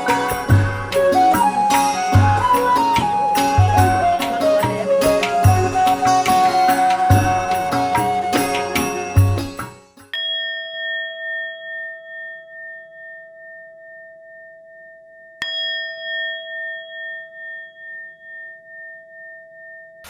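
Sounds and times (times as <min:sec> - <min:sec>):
metal bell ringing: 0:00.0 - 0:03.0, 0:03.7 - 0:13.1, 0:15.4 - 0:19.1
music: 0:00.0 - 0:20.0.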